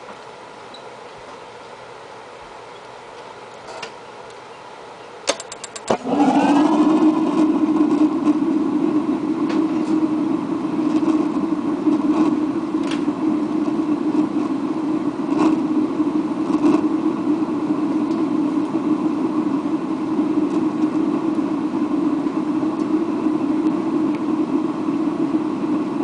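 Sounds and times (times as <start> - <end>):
burner flame roaring: 3.3 - 26.0
igniter sparking clicks: 5.2 - 6.8, 10.8 - 14.5
gas flame catching whoosh: 5.9 - 26.0.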